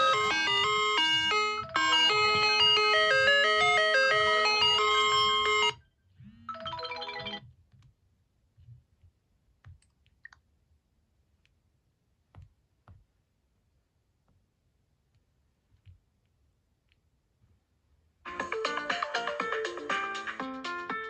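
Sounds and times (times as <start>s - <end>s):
smartphone ringtone melody: 0.0s - 5.8s, 6.4s - 7.5s.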